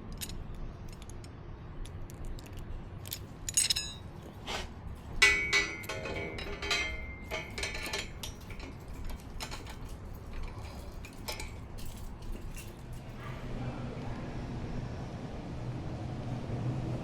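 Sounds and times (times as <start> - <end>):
metal parts clinking: 0.0 - 13.2
vehicle engine hum: 12.3 - 17.0.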